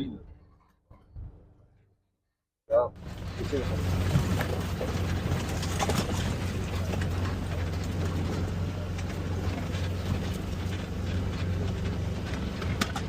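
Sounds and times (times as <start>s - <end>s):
road noise: 2.7s - 13.0s
vehicle engine hum: 2.7s - 13.0s.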